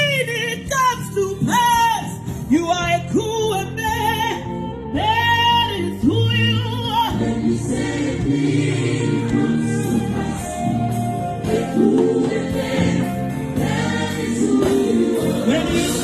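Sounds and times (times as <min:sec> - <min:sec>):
woman singing gospel: 0:00.0 - 0:16.0
choir singing held chords: 0:07.1 - 0:16.0.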